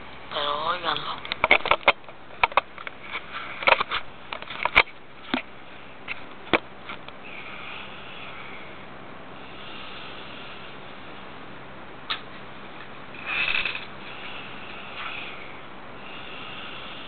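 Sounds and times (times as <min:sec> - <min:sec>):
boy snoring: 0:13.2 - 0:17.0.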